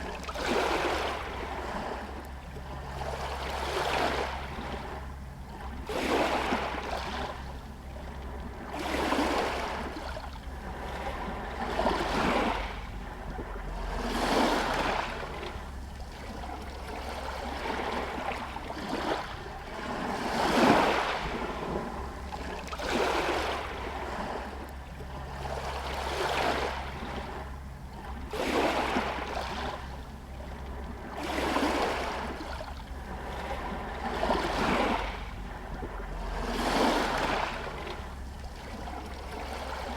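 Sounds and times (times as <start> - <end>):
small waves lapping against stones: 0.0 - 39.9
steady low rumble: 9.5 - 39.9.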